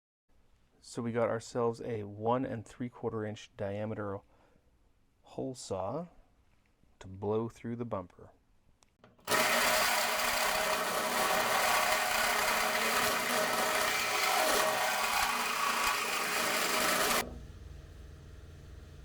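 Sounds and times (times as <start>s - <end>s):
power drill hole saw cutting: 9.3s - 17.3s.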